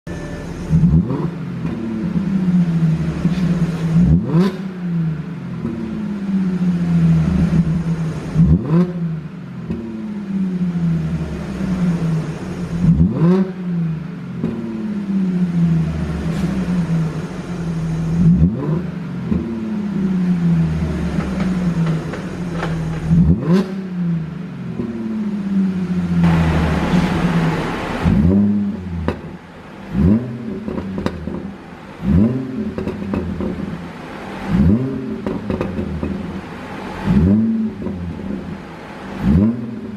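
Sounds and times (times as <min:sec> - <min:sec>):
car engine revving: 0:00.1 - 0:39.9
exhaust pops: 0:20.9 - 0:23.8, 0:26.2 - 0:36.5.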